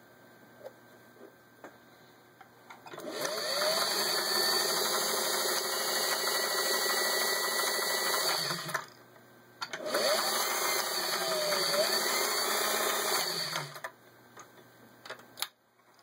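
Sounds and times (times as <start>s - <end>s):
sewing machine running: 3.0s - 8.9s, 9.8s - 13.8s.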